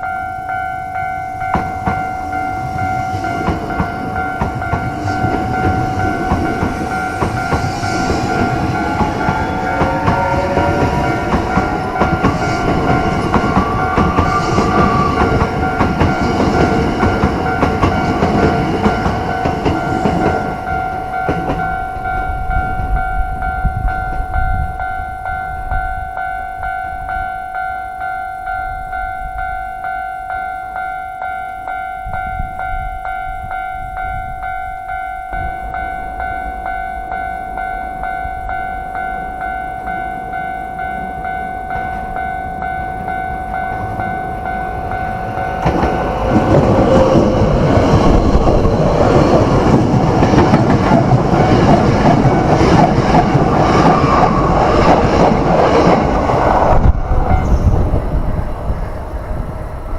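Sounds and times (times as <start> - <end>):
level-crossing bell ringing: 0.0 - 58.7
electric train running: 0.0 - 59.9
train motor whine: 0.1 - 22.4.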